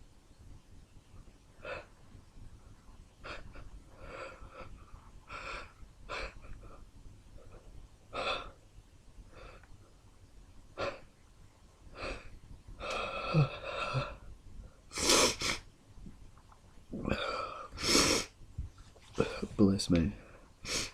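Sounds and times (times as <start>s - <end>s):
man gasping breaths: 12.0s - 14.3s
man sniffing: 14.9s - 15.6s, 17.1s - 18.3s.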